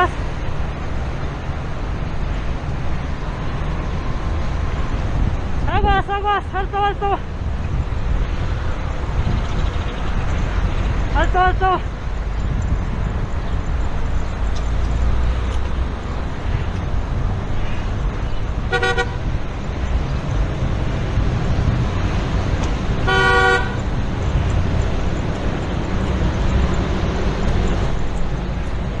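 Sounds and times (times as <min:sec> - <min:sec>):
street traffic rumble: 0:00.0 - 0:29.0
car horn honking: 0:18.7 - 0:19.3, 0:23.0 - 0:23.8.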